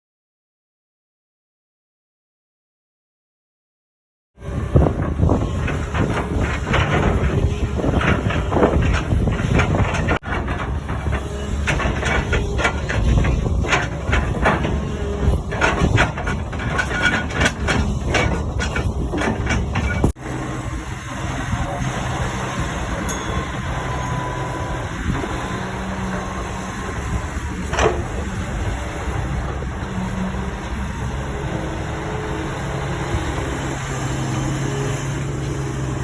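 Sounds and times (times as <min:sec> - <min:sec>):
heavy engine running: 0:04.4 - 0:36.0
knocks and metallic clatter: 0:04.8 - 0:20.2, 0:22.3 - 0:32.6.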